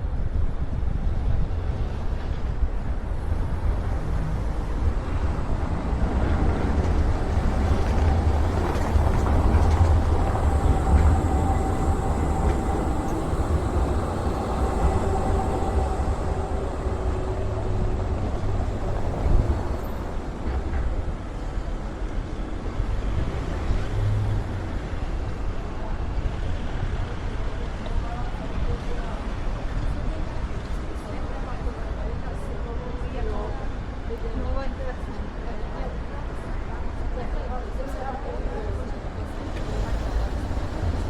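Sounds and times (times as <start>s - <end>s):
wind buffeting microphone: 0.0s - 23.8s.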